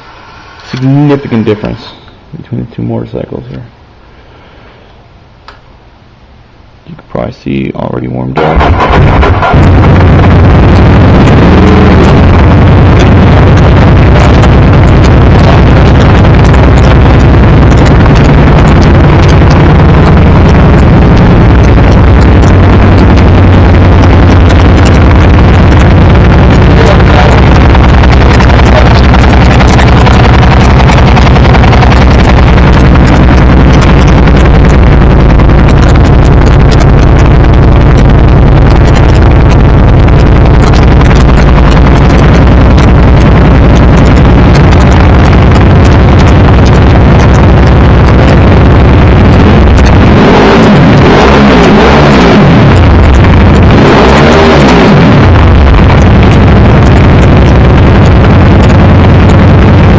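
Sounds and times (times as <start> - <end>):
motorcycle engine running: 8.4 - 59.9.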